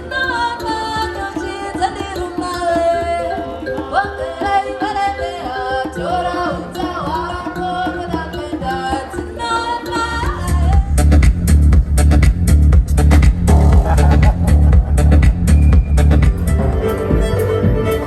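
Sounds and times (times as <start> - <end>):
hand drums: 0.0 - 18.0
heavy bass beat: 10.3 - 18.0
person singing: 13.5 - 18.0.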